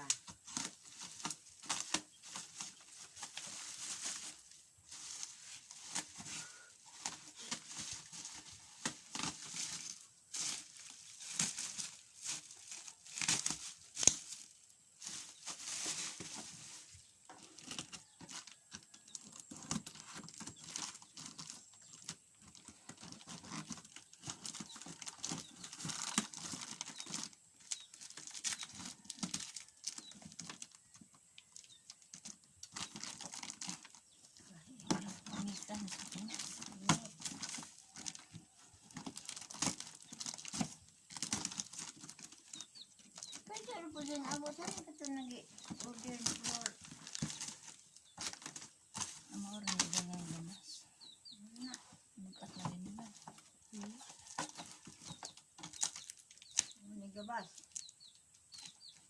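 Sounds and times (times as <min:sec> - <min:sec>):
packaging crinkling and tearing: 0:00.0 - 0:50.5, 0:53.1 - 0:56.8.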